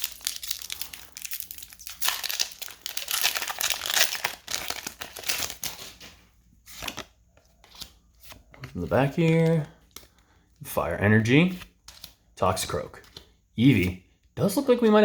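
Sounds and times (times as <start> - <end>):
foil wrapper crinkling and tearing: 0.0 - 6.0.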